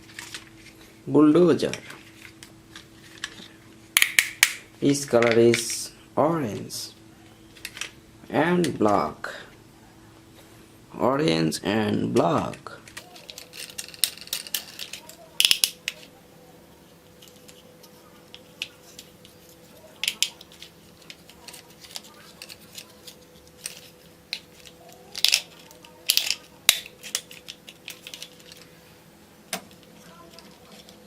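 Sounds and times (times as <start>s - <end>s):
plastic toys clicking and clattering: 2.1s - 4.6s, 12.1s - 16.1s, 17.2s - 28.7s, 29.5s - 31.0s.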